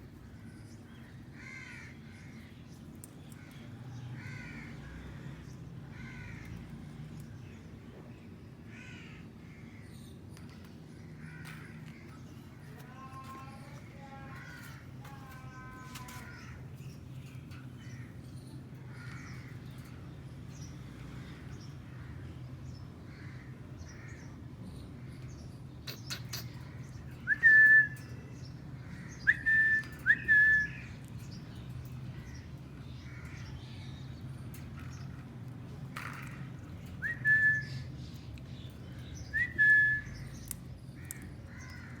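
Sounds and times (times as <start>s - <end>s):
soft bird chirps: 23.8s - 35.3s, 36.0s - 42.0s
rising bird whistles: 27.2s - 28.1s, 29.3s - 30.8s, 37.0s - 37.8s, 39.3s - 40.2s.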